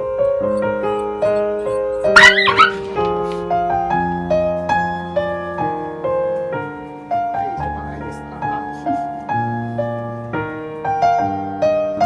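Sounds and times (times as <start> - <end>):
piano melody: 0.0 - 12.0
high-pitched animal cries: 0.2 - 2.9.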